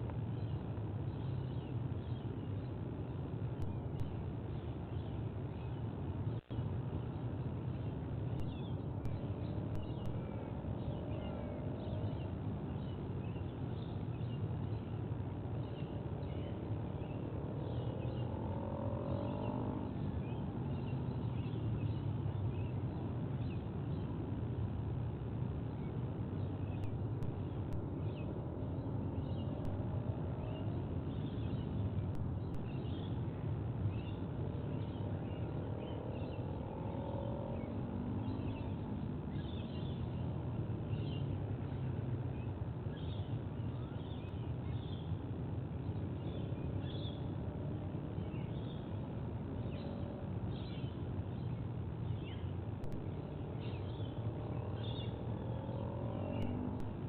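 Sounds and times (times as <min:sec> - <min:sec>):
small birds chirping: 0:25.4 - 0:57.0.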